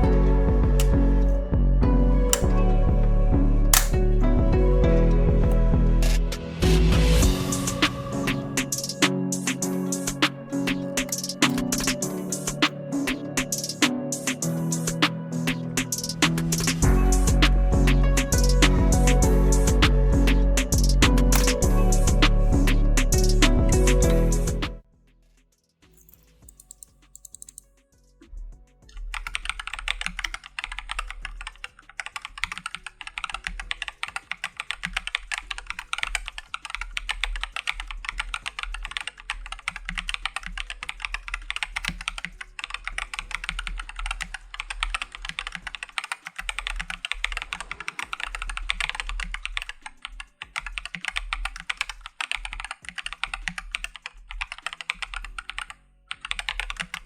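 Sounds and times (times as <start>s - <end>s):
mechanical keyboard typing: 3.8s - 4.0s, 21.3s - 21.6s, 26.0s - 27.6s, 29.0s - 57.0s.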